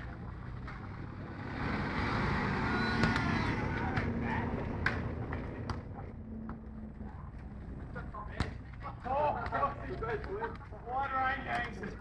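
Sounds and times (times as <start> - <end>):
car driving past: 1.0 - 4.7.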